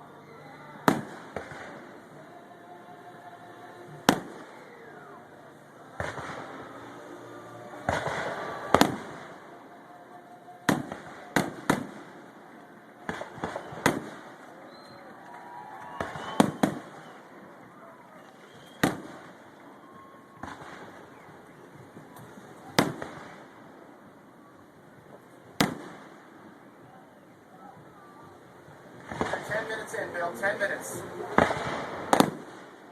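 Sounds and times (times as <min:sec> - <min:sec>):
fireworks rumble: 0:00.0 - 0:32.9
fireworks booming: 0:00.8 - 0:02.1, 0:04.0 - 0:05.0, 0:05.9 - 0:07.0, 0:07.7 - 0:09.6, 0:10.6 - 0:15.0, 0:15.8 - 0:17.3, 0:18.2 - 0:24.0, 0:25.1 - 0:26.6, 0:28.9 - 0:32.9.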